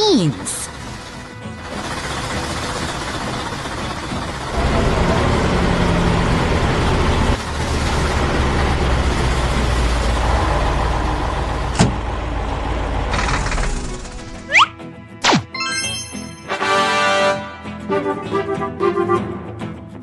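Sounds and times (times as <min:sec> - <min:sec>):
heavy vehicle engine running: 0:00.0 - 0:14.5.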